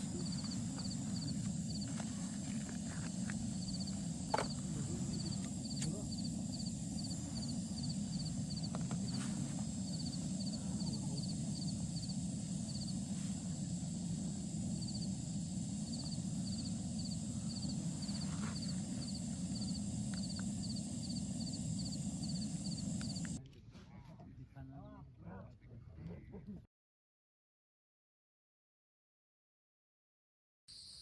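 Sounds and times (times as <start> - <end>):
faint high whine: 0.0 - 23.4
insect chirping in pulsed trills: 0.0 - 23.4
steady low rumble: 0.0 - 23.4.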